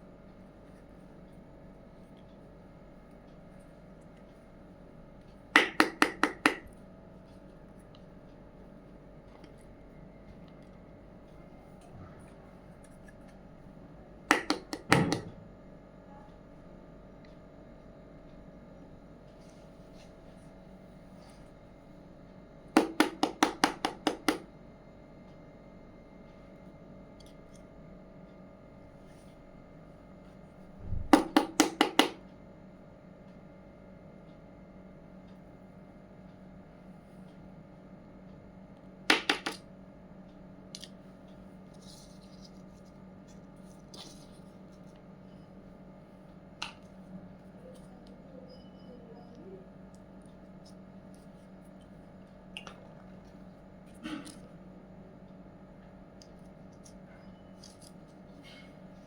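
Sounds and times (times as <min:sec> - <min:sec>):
steady low hum: 0:00.0 - 0:59.0
quick taps of small hard pieces: 0:14.3 - 0:15.3, 0:39.1 - 0:39.6.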